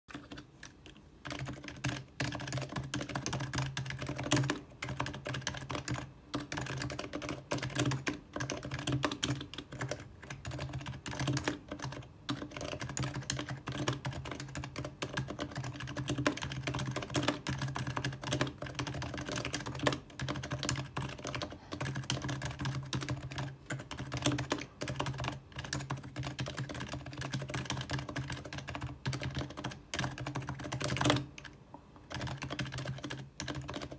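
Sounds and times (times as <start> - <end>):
keyboard typing: 0.1 - 33.9.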